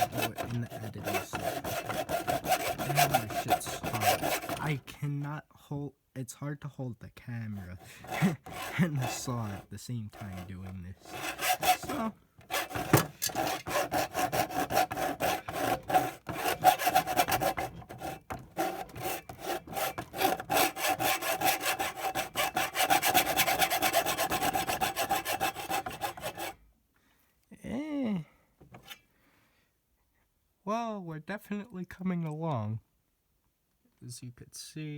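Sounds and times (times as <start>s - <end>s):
hand saw cutting plastic: 0.0s - 4.8s, 7.4s - 26.6s.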